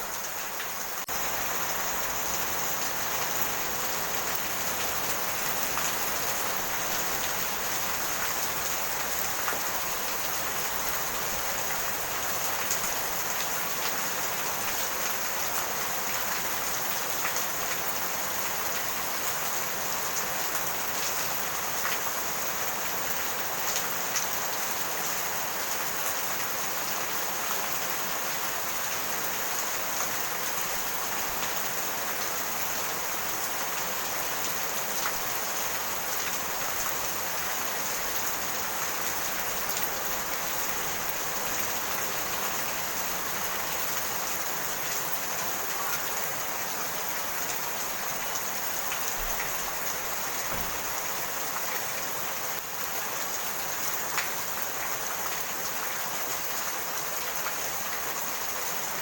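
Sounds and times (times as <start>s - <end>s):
rain hiss: 0.0s - 59.0s
raindrop taps: 50.5s - 50.8s.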